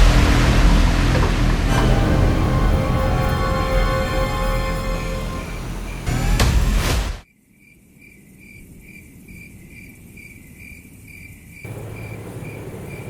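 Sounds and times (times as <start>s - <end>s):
low rumbling noise: 0.0s - 7.2s
cricket chirping: 7.2s - 13.0s.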